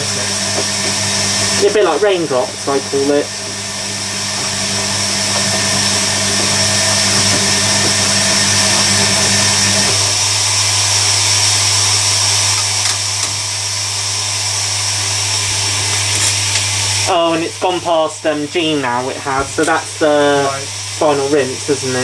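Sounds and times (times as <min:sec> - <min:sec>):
inlet valve hum: 0:00.0 - 0:22.0
water rushing in: 0:00.0 - 0:22.0.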